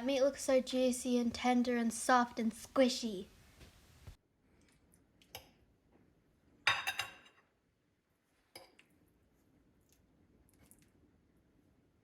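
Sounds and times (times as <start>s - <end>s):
cutlery clinking on a plate: 6.7s - 7.4s.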